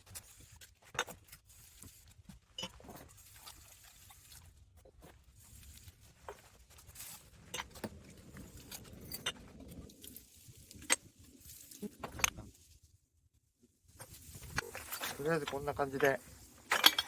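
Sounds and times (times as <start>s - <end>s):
bottles and cans clinking: 14.5s - 17.0s.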